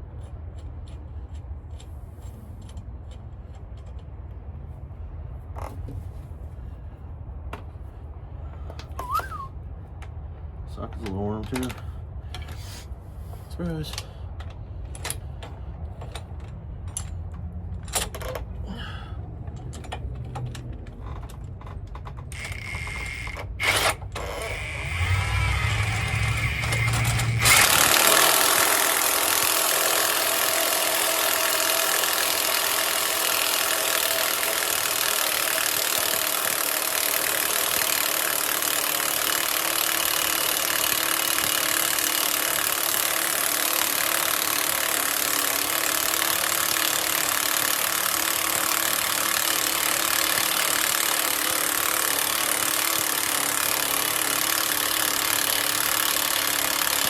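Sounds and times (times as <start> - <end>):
power tool running: 22.3 - 57.0
low hum: 24.2 - 29.2.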